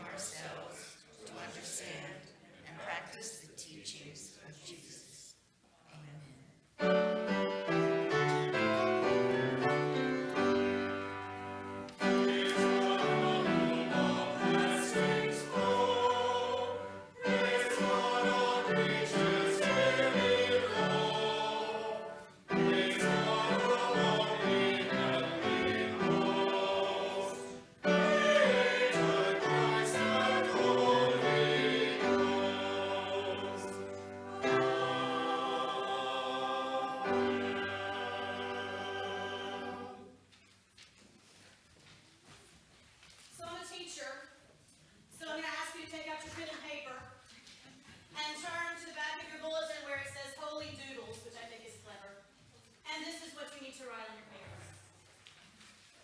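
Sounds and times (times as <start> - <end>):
group singing a hymn: 7.7 - 40.2.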